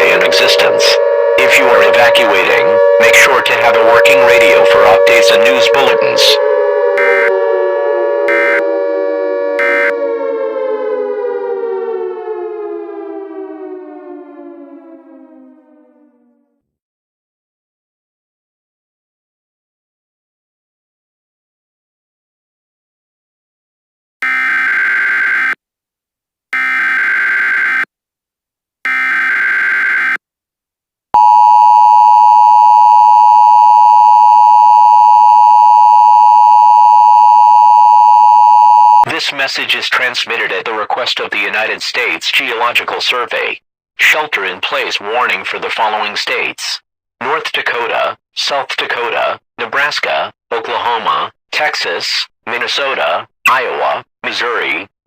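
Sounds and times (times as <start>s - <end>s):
steady alert attention tone: 0.0s - 7.4s
civil defense siren wailing: 0.0s - 16.6s.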